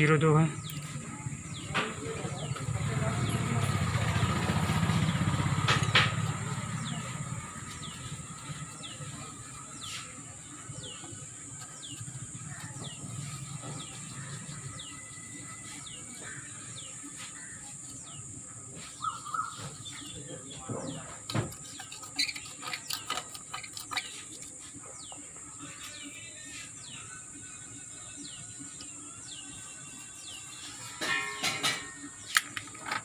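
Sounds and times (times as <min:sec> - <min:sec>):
small bird chirping: 0:05.8 - 0:27.2.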